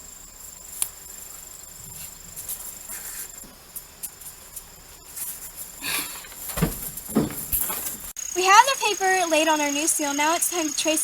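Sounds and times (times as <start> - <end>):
rustling: 0.0 - 8.2
high-pitched insect trill: 0.0 - 11.0.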